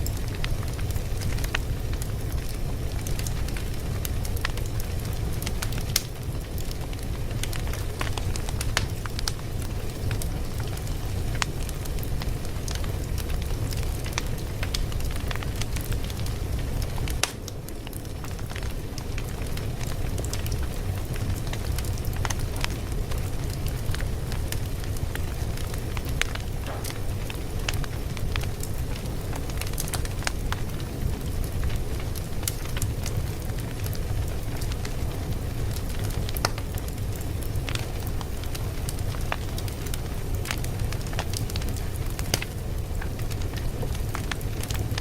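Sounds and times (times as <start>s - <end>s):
fire crackling: 0.0s - 45.0s.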